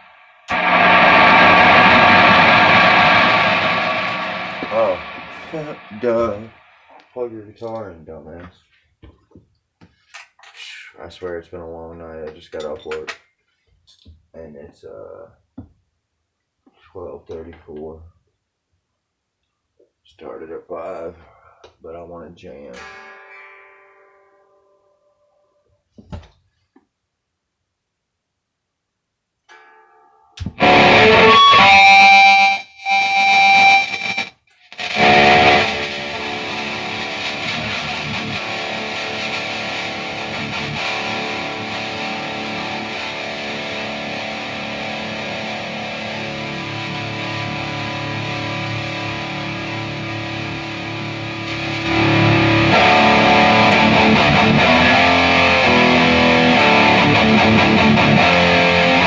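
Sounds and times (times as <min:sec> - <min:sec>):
distorted electric guitar: 0:00.0 - 0:07.2, 0:22.6 - 0:24.8, 0:30.4 - 0:59.0.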